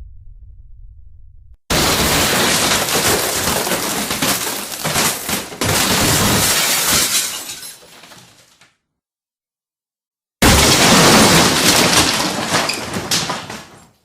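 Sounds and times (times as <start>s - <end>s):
glass shattering: 1.7s - 8.6s, 10.4s - 14.0s.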